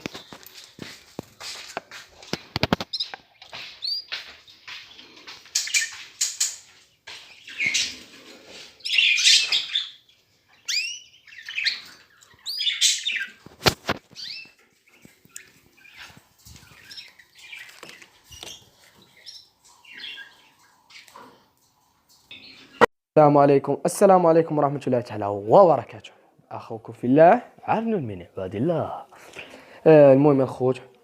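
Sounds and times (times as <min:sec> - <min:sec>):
canaries chirping: 0:00.0 - 0:22.8.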